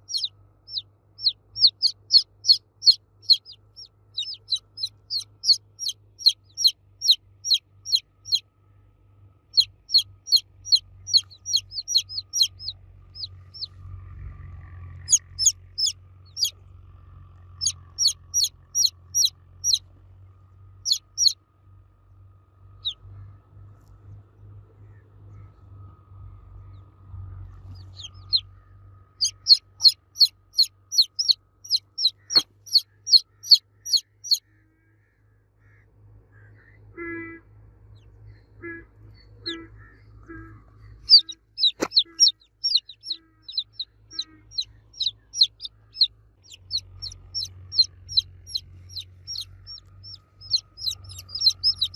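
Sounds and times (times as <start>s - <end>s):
baby chicks cheeping: 0.0s - 8.4s, 9.5s - 13.8s, 14.9s - 16.6s, 17.6s - 19.9s, 20.8s - 21.4s, 22.8s - 23.1s, 27.6s - 34.4s, 38.0s - 51.9s
faint low hum: 0.0s - 51.9s.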